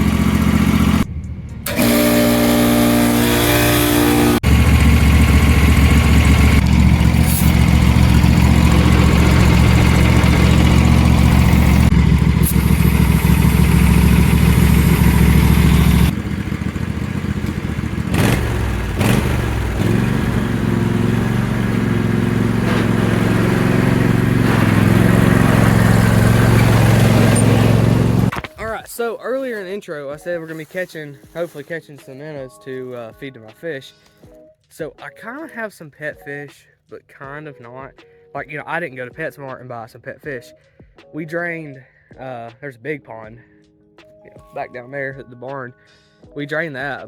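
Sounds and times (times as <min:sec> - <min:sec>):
small petrol engine running: 0:00.0 - 0:28.4.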